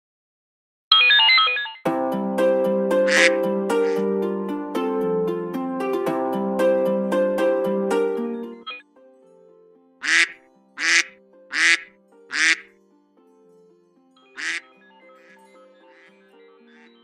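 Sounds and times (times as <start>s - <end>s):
soft keyboard melody: 1.9s - 17.0s
cartoon duck quacks: 3.1s - 4.0s, 10.0s - 12.6s, 14.4s - 14.6s.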